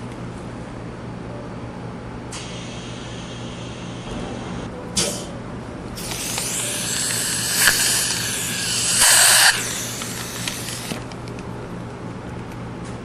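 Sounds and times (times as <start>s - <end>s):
dental equipment hissing: 6.0s - 11.0s.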